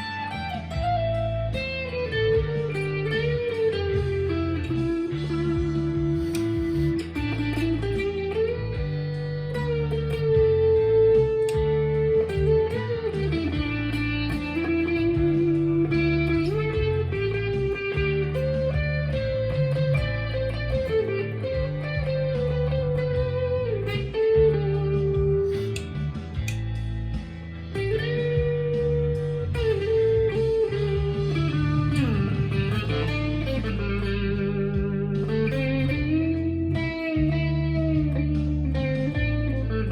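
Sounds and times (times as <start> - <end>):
electric guitar lead with bends: 0.0 - 39.9
low accompaniment: 0.0 - 39.9.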